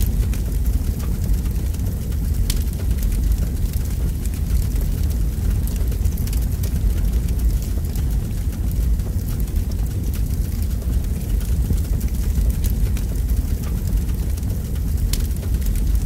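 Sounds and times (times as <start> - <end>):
deep rumble: 0.0 - 16.0
faint crackle: 0.0 - 16.0.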